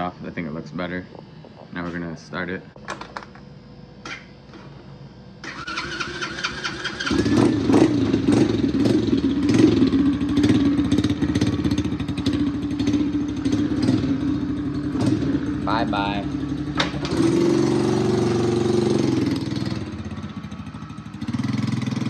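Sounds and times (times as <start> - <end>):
electric starter whining: 0.0 - 22.0
small engine running: 5.4 - 22.0.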